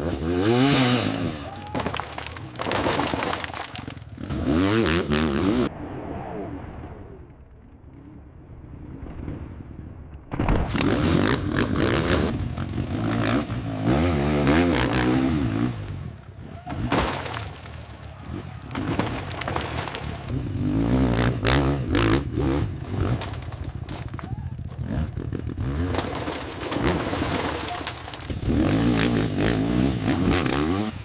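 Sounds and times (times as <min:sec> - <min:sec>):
motorcycle engine revving hard: 0:00.0 - 0:01.3
clattering and scraping: 0:01.7 - 0:04.1, 0:16.7 - 0:20.5, 0:22.7 - 0:28.8.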